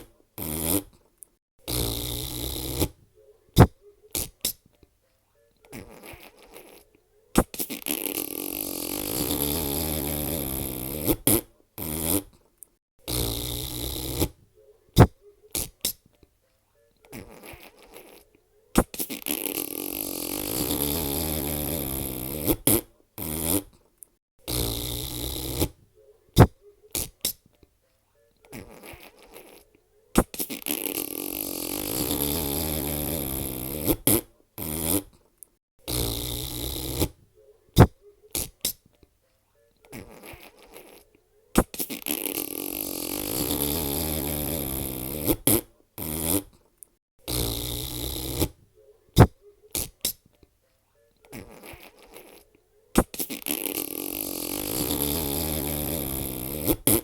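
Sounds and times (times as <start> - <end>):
long wavering fart: 0.0 - 1.0, 1.6 - 3.0, 7.4 - 12.3, 13.0 - 14.4, 18.8 - 23.8, 24.4 - 25.8, 30.2 - 35.2, 35.8 - 37.2, 41.6 - 46.6, 47.2 - 48.6, 53.0 - 57.0
short farts and sharp pops: 0.0 - 3.0, 3.6 - 4.6, 5.7 - 6.8, 7.4 - 12.4, 13.0 - 14.4, 15.0 - 16.0, 17.1 - 18.2, 18.8 - 23.8, 24.4 - 25.8, 26.4 - 27.4, 30.2 - 35.2, 35.8 - 37.2, 37.8 - 38.8, 39.9 - 41.0, 41.6 - 46.6, 47.2 - 48.6, 49.2 - 50.2, 51.3 - 52.4, 53.0 - 57.0.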